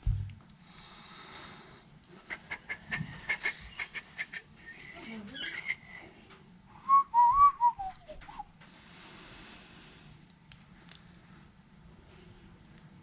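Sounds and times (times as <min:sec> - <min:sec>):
person whistling: 0:06.9 - 0:08.5
steady hiss: 0:08.0 - 0:10.8.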